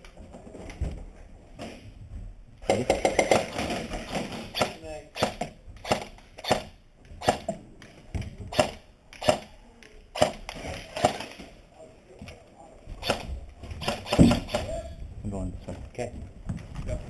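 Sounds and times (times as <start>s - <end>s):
quiet movement noise: 0.0s - 2.6s, 5.5s - 13.8s, 14.9s - 17.0s.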